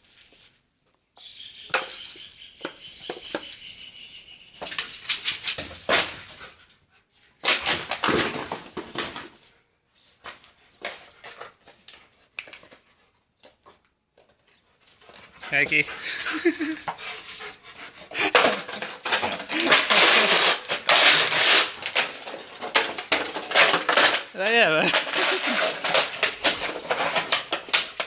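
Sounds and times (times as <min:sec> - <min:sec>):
plastic bottle crunching: 0:18.2 - 0:28.0.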